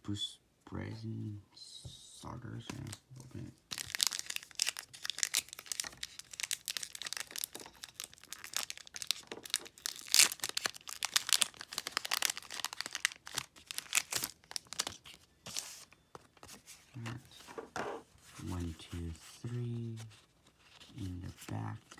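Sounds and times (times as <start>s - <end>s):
foil wrapper tearing and crinkling: 3.7s - 15.2s.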